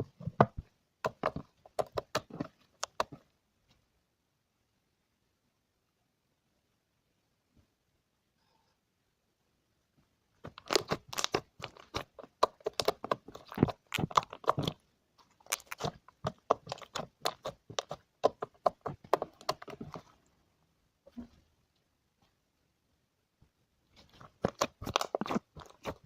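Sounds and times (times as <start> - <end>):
slime crackling and popping: 10.4 - 14.8, 15.4 - 20.0, 24.1 - 26.0.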